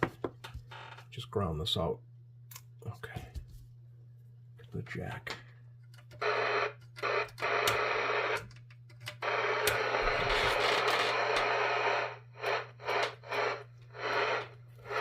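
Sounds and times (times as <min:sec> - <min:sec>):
radio static hissing: 0:06.2 - 0:08.4, 0:09.2 - 0:15.0.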